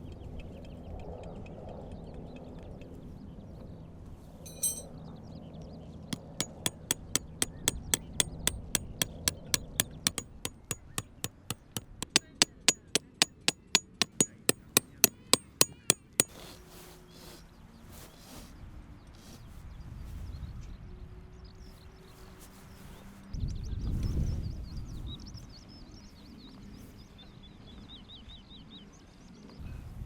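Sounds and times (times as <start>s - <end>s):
metallic hammer strikes: 4.5s - 4.9s, 6.2s - 16.3s.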